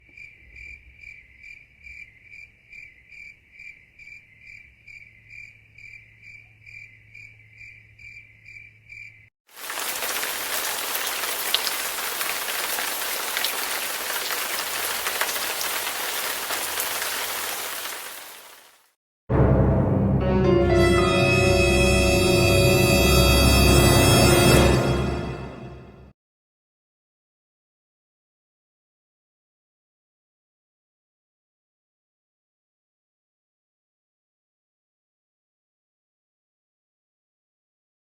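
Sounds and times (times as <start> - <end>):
cricket chirping: 0.0 - 10.2
steady rain: 9.5 - 18.9.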